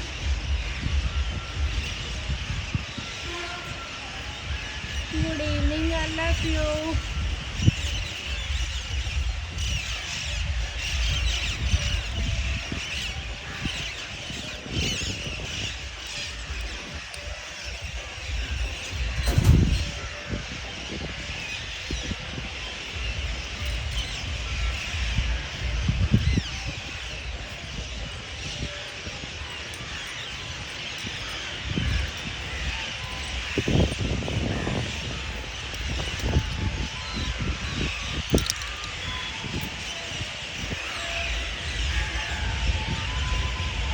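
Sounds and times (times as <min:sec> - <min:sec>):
flock of birds calling: 0:00.0 - 0:43.9
parrots and crows screeching: 0:01.4 - 0:43.9
steady low rumble: 0:15.8 - 0:20.6
low bumps: 0:17.9 - 0:20.1.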